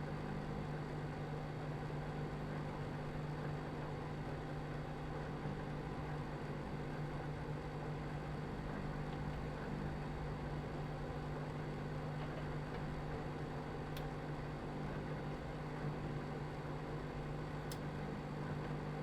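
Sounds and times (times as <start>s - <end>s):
microwave oven humming: 0.0s - 19.0s
faint click: 17.6s - 17.9s.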